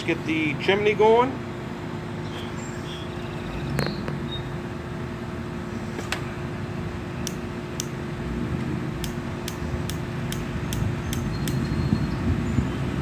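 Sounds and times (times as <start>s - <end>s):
steady low hum: 0.0s - 13.0s
sharp short clicks: 9.0s - 11.7s.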